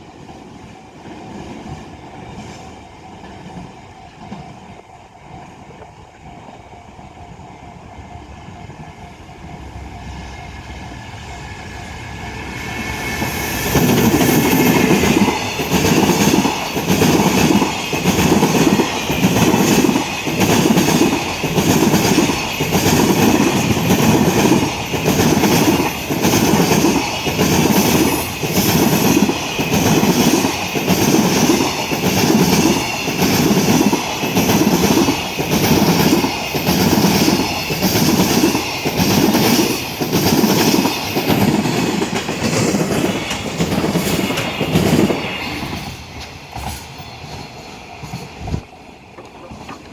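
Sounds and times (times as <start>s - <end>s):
freight train approaching: 0.0s - 49.9s
wheels clacking over rail joint: 13.8s - 49.9s.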